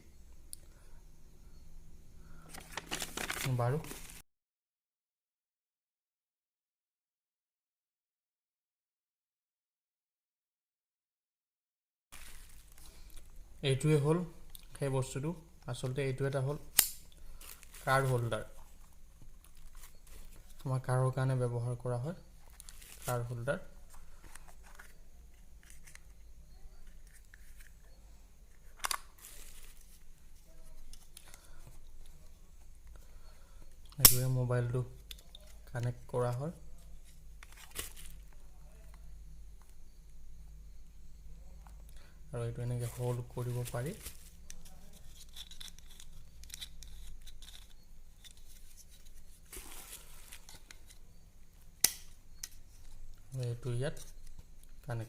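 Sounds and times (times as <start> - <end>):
rustling: 2.4 - 4.2, 12.2 - 13.3, 22.4 - 25.0, 28.6 - 32.4, 42.8 - 51.1
sharp click: 16.8 - 17.1.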